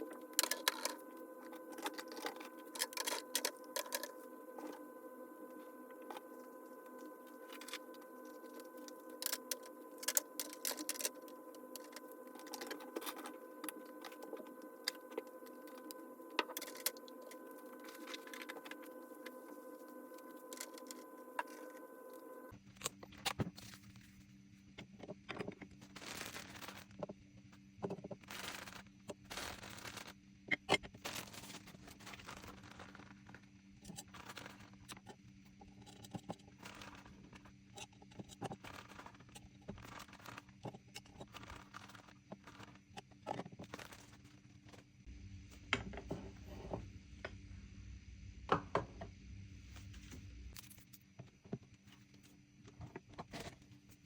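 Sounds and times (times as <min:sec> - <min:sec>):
objects clicking and knocking: 0:00.0 - 0:04.8
steady low hum: 0:00.0 - 0:22.6.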